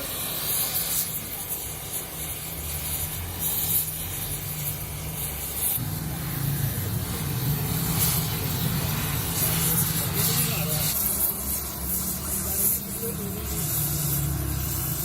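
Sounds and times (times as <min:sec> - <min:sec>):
high hiss: 0:00.0 - 0:15.0
low machine drone: 0:05.8 - 0:12.5.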